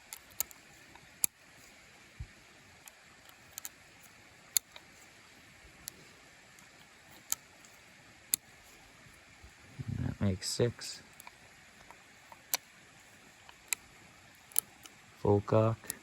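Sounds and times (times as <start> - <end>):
revolver cartridges loading clicks: 2.8 - 3.8.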